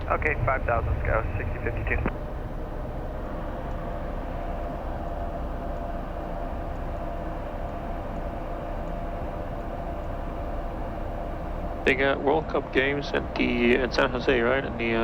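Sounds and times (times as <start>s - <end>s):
faint steady hum: 0.0s - 15.0s
jet cockpit rush: 0.0s - 15.0s.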